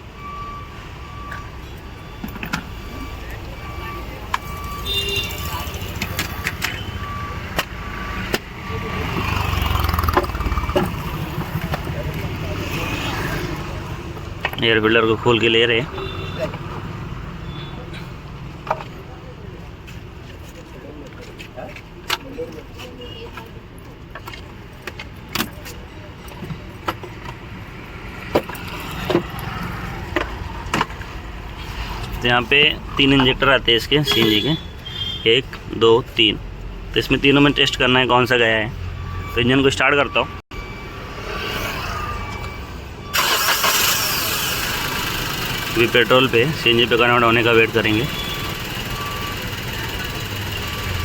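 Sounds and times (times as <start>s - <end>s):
car engine idling unevenly: 43.1s - 51.0s.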